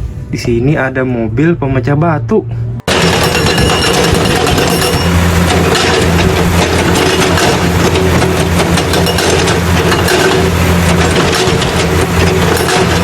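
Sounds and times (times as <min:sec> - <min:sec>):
heavy machine engine running: 0:02.7 - 0:13.0.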